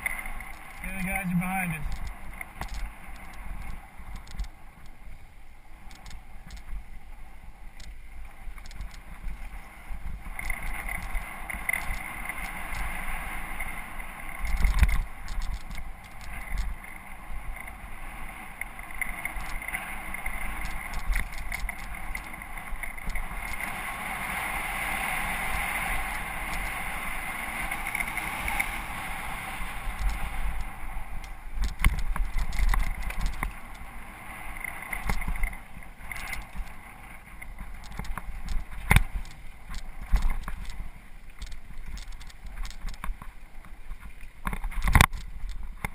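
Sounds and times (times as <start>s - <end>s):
bike tyre noise on dirt: 0.0s - 45.9s
wind rumble on microphone: 0.0s - 45.9s
bike rattling clicks and knocks: 1.8s - 5.0s, 8.6s - 9.1s, 14.4s - 16.8s, 20.5s - 23.7s, 29.9s - 33.9s, 37.5s - 43.3s.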